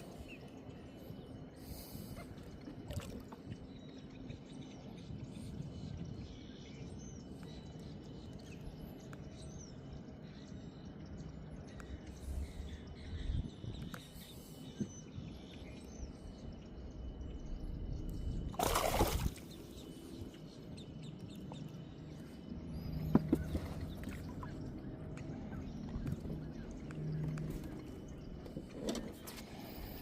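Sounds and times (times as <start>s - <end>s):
water sloshing and trickling: 0.0s - 4.0s, 18.1s - 30.0s.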